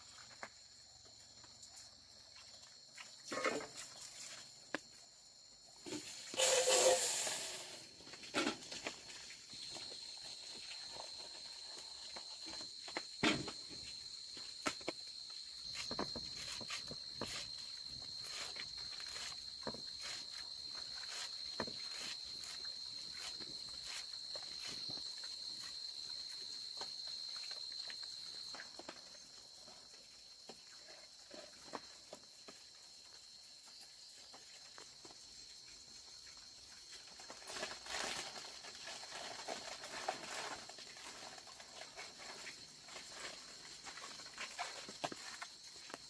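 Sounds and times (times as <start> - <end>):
high-pitched insect trill: 0.0 - 46.0
rustling: 14.5 - 28.1, 37.0 - 46.0.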